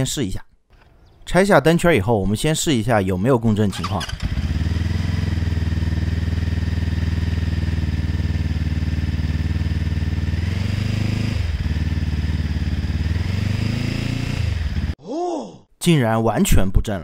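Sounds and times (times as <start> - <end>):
motorcycle engine running: 3.8 - 15.0.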